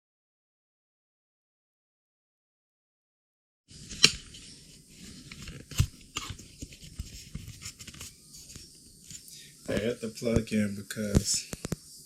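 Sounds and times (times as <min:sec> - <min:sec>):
small clicks and taps: 0:11.1 - 0:11.8.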